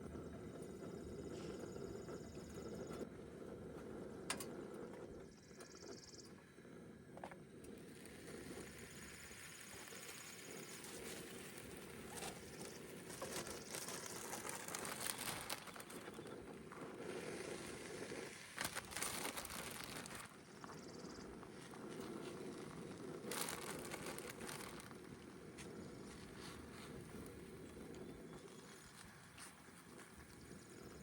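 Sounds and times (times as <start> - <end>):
rustling and crinkling: 7.2 - 31.0.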